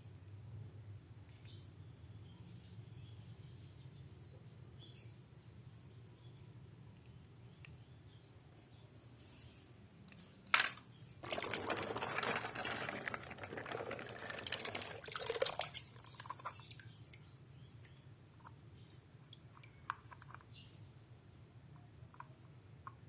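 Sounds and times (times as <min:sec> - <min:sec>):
dense crackling rustling noise: 0:11.2 - 0:15.0.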